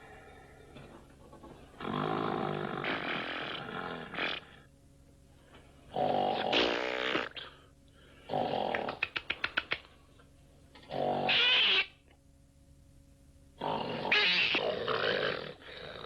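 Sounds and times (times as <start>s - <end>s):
loud snoring: 1.8s - 4.6s.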